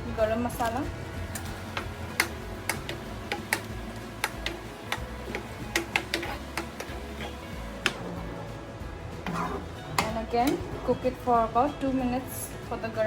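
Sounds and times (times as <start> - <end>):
low steady hum: 0.0 - 13.0
utensil clicking against pan: 1.3 - 8.1.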